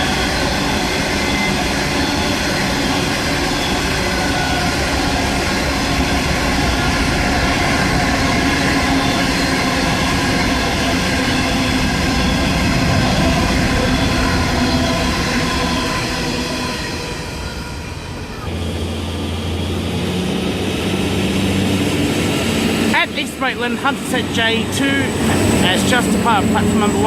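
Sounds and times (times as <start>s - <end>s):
train wheels rumbling on rails: 0.0s - 27.0s.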